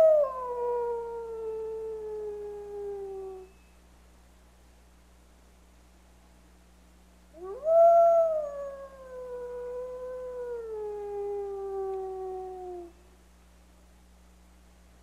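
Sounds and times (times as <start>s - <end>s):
wolf howling: 7.4s - 12.9s.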